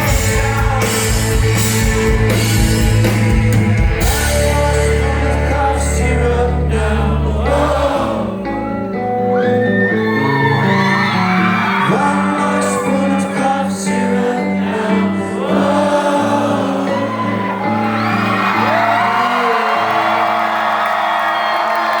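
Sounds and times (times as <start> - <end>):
person singing: 0.0 - 10.7, 11.6 - 20.5
live rock band playing: 0.0 - 20.9.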